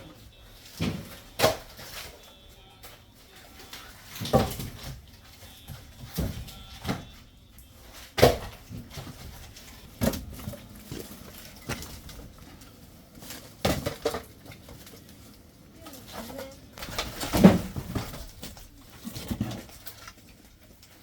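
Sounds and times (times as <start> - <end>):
firewood logs knocking: 3.6 - 7.3, 8.0 - 12.7, 13.4 - 15.0, 16.8 - 20.1.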